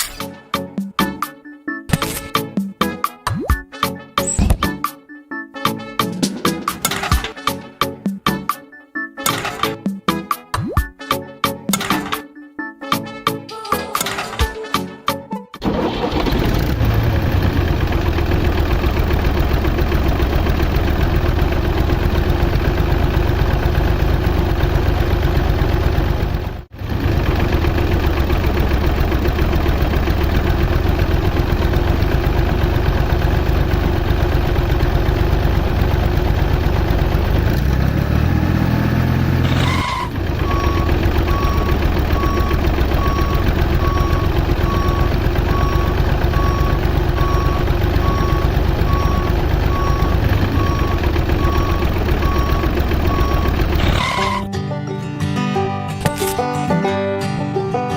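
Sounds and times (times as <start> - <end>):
tractor engine running: 15.6 - 54.5
reversing alarm beeping: 39.4 - 54.5.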